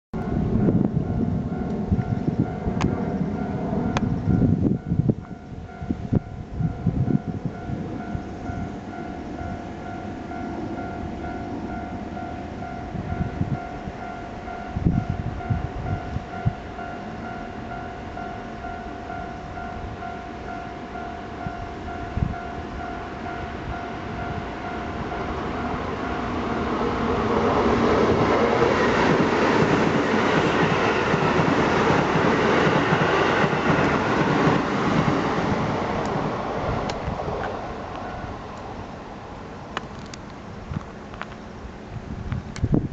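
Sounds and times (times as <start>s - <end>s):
train passing through crossing: 0.2s - 42.9s
level crossing bell two-tone ringing: 4.4s - 26.8s.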